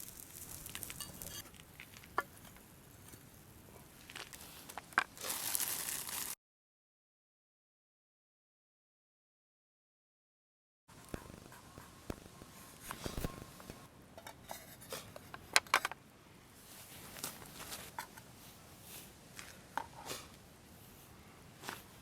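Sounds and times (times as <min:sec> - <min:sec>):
metal cookware clinking: 0:00.9 - 0:01.4.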